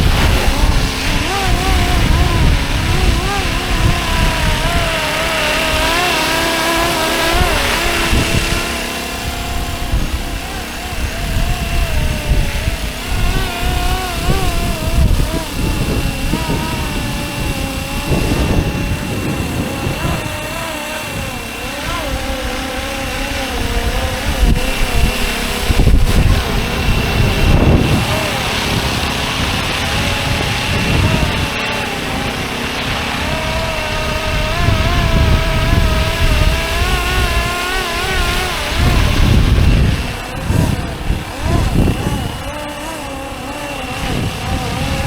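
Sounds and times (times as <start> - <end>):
rc helicopter motor whining: 0.0 - 45.0
wind rumble on microphone: 0.0 - 45.0.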